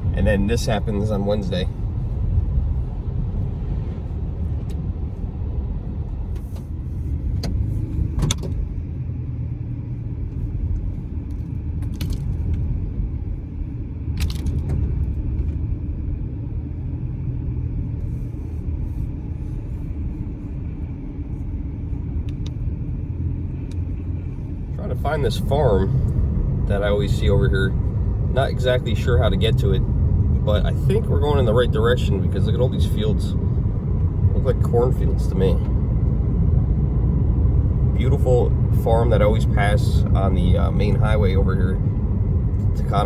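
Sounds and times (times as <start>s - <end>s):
car driving rumble: 0.0s - 43.0s
clicks and rattles in car: 6.2s - 8.8s, 10.6s - 12.8s, 14.1s - 15.7s.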